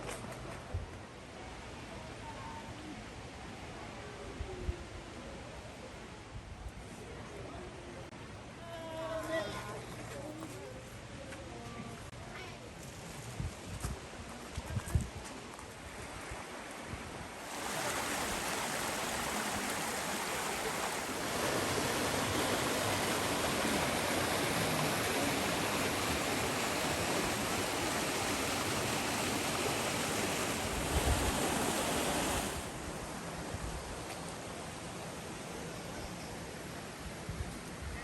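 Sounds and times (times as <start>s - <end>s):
mountain stream rushing: 15.7s - 35.6s.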